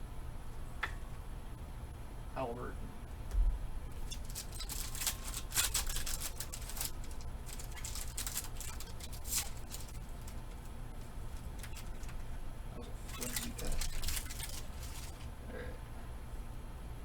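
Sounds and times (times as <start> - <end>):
cards rustling against wrapper: 4.0 - 15.4.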